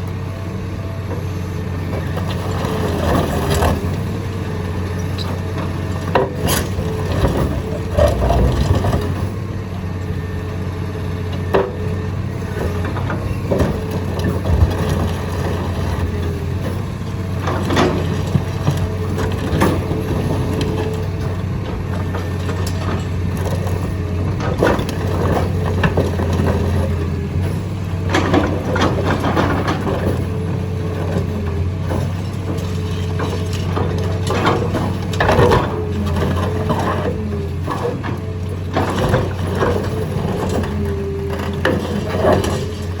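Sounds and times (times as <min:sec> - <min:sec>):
diesel engine running: 0:00.0 - 0:43.0
concrete cracking and crunching: 0:12.7 - 0:43.0.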